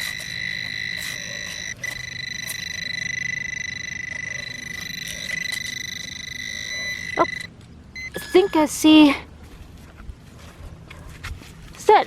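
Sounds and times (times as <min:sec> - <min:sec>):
pinpointer pulsing high-pitched buzz: 0:00.0 - 0:08.8.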